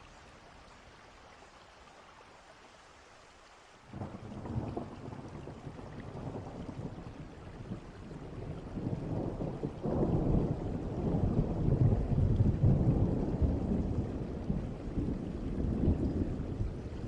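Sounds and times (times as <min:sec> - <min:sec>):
steady rain: 0:00.0 - 0:17.0
thunder rumbling: 0:04.0 - 0:17.0.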